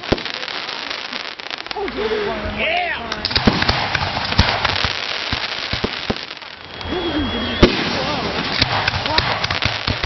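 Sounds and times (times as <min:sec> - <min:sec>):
fireworks crackling and popping: 0:00.0 - 0:10.0
loud firework bang: 0:03.3 - 0:06.3, 0:07.6 - 0:10.0
firework whistle: 0:04.4 - 0:08.4.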